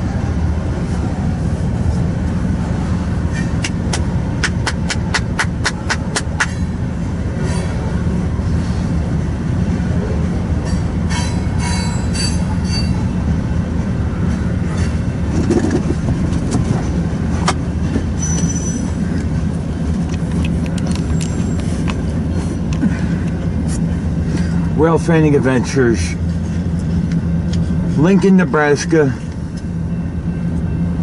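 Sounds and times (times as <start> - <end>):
freight train rumbling past: 0.0 - 31.0
high wheel squeals: 10.7 - 13.2, 18.0 - 19.2, 21.1 - 21.8.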